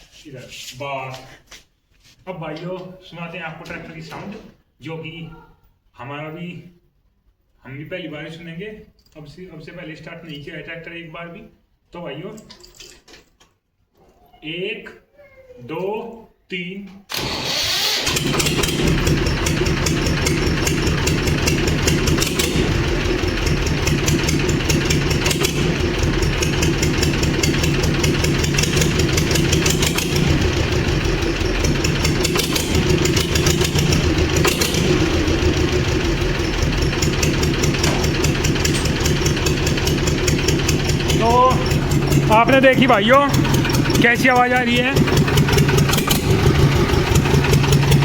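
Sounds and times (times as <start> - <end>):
unmuffled tractor engine: 17.1 - 48.0.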